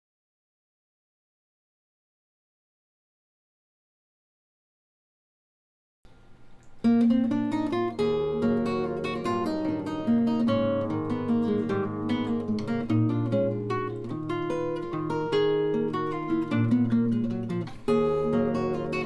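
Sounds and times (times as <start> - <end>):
guitar strumming chords: 6.8 - 19.0.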